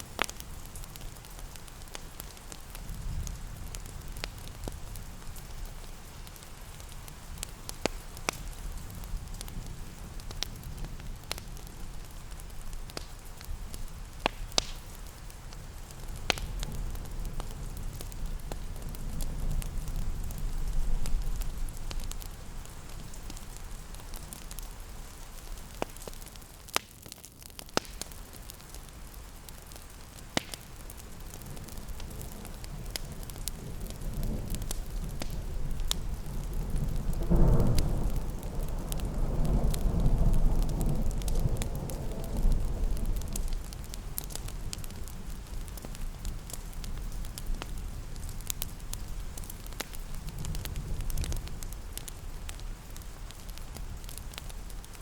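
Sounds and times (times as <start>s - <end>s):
fireplace crackling and popping: 0.0s - 55.0s
rain hissing: 27.9s - 55.0s.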